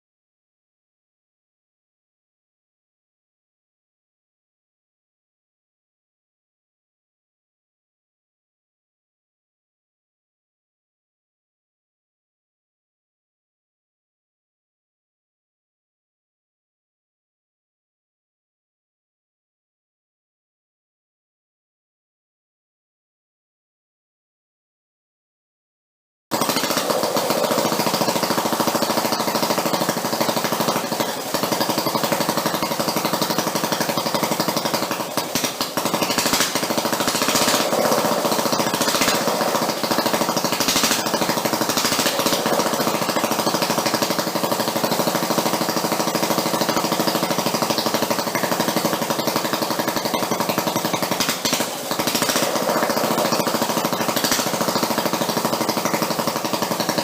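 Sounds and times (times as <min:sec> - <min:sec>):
single-cylinder engine running: 0:26.3 - 0:57.0.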